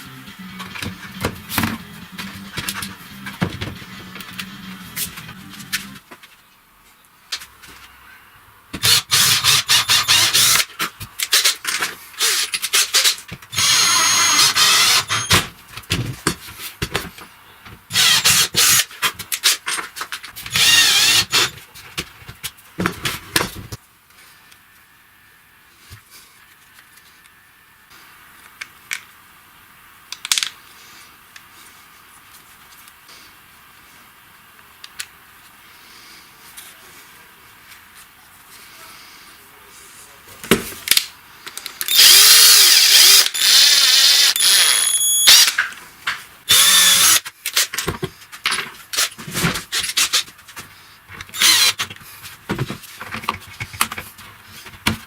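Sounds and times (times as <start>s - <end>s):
power drill running: 8.8s - 10.6s, 13.5s - 15.4s, 17.9s - 18.8s, 20.5s - 21.5s, 41.9s - 45.6s, 46.5s - 47.2s, 51.4s - 51.8s.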